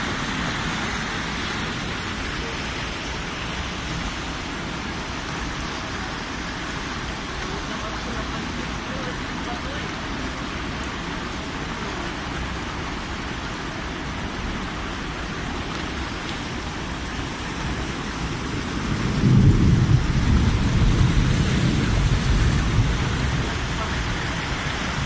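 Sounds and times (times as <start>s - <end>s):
heavy rain hissing: 0.0s - 25.0s
low rumble of thunder: 17.7s - 25.0s.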